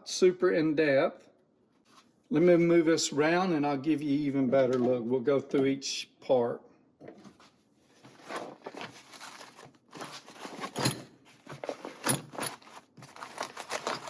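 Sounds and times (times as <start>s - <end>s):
fabric case rustling and scraping: 7.2s - 14.0s.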